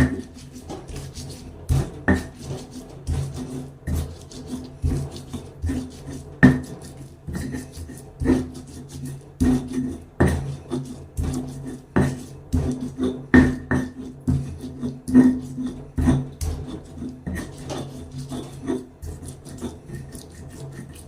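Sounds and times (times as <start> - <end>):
knife chopping on wooden board: 0.0 - 15.4.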